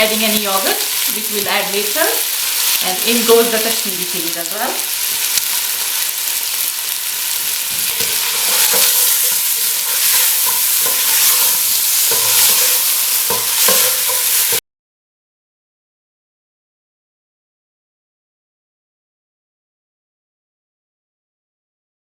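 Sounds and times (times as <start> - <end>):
food sizzling in hot oil: 0.0 - 14.6
spoon scraping and knocking a pot: 7.7 - 14.6.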